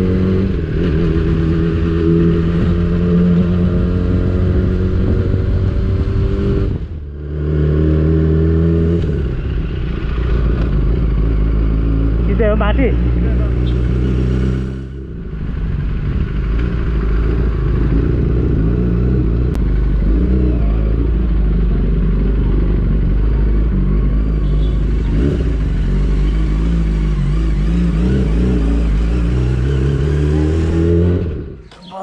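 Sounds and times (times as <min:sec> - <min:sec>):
motorcycle engine running: 0:00.0 - 0:32.0
road noise: 0:00.0 - 0:32.0.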